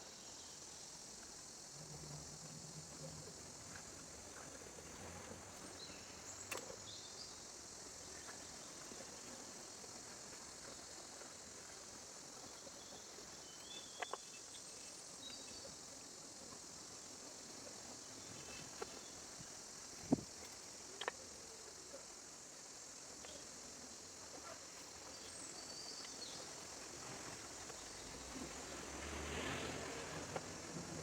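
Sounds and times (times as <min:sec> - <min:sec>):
high insect drone: 0:00.0 - 0:31.0.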